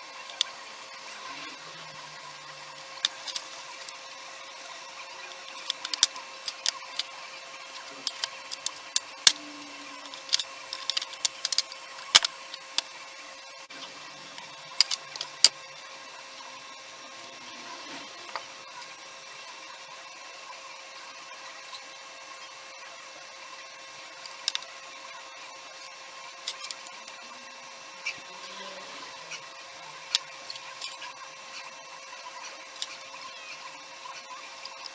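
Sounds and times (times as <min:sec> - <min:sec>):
faint steady hum: 0:00.0 - 0:34.9
tools clicking and tapping: 0:03.0 - 0:03.9, 0:05.6 - 0:07.1, 0:07.8 - 0:12.9, 0:14.4 - 0:15.6, 0:24.2 - 0:24.6, 0:26.4 - 0:26.9.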